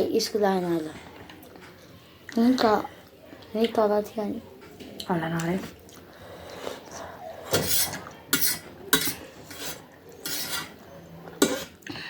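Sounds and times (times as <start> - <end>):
utensils clinking and scraping dish: 7.4 - 11.8.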